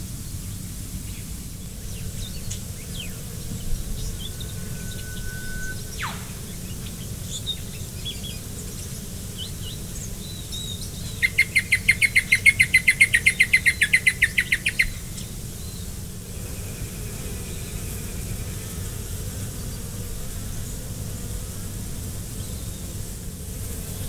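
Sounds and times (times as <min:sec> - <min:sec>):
loud rapid bird trill: 0:01.6 - 0:15.9
bird whistle with falling sweep: 0:02.2 - 0:08.3
short high bird calls: 0:02.5 - 0:08.2.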